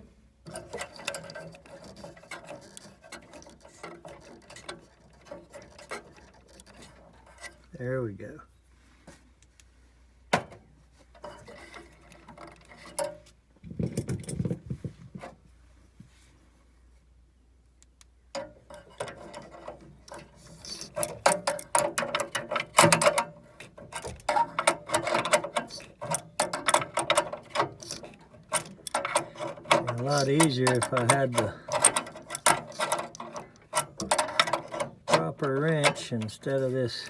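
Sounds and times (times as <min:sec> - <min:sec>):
wrench ratcheting on metal: 0:20.1 - 0:36.7.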